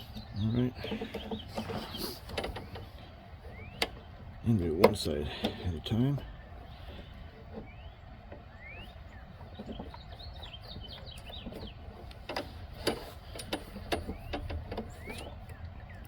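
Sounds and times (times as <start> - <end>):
low background hum: 0.0 - 16.0
small birds chirping: 0.0 - 16.0.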